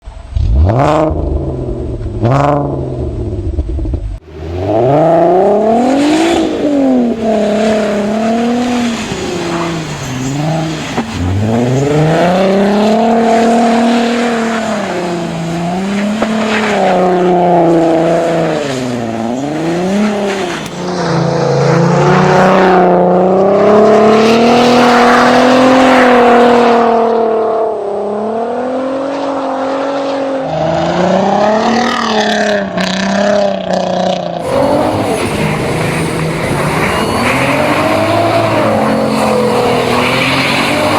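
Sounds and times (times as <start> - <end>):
car engine revving hard: 0.4 - 3.6, 4.2 - 40.9
tyres hissing on snow: 6.0 - 16.6, 34.4 - 40.9.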